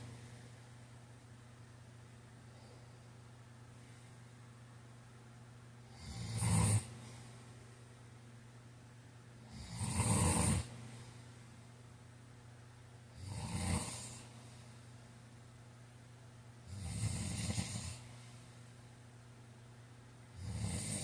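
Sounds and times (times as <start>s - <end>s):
man snoring: 5.9s - 6.9s, 9.5s - 10.7s, 13.2s - 14.3s, 16.7s - 18.0s, 20.3s - 21.0s.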